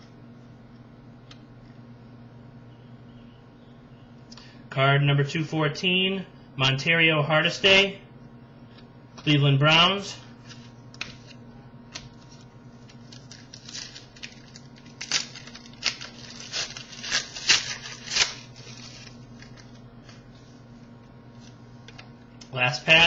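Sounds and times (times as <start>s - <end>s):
faint electrical hum: 0.0s - 23.0s
card pack tearing and rustling: 12.0s - 19.8s.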